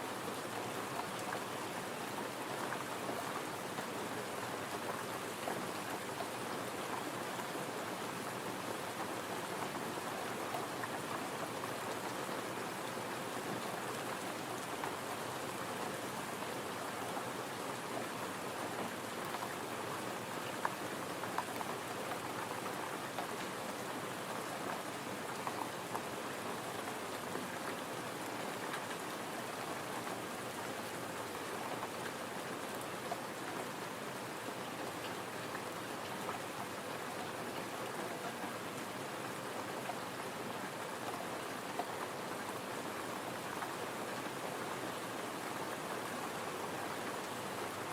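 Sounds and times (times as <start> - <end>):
gentle rain falling: 0.0 - 47.9.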